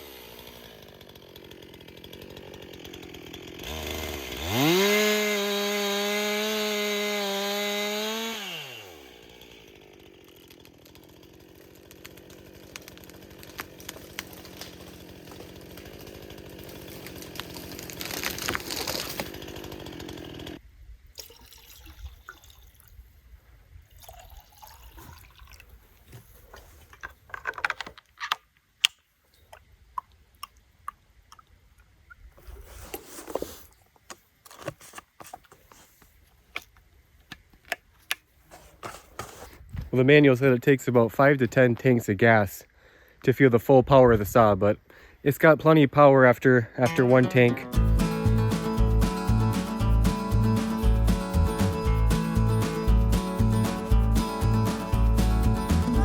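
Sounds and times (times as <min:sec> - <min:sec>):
chainsaw revving and idling: 0:00.0 - 0:20.6, 0:47.8 - 0:56.0.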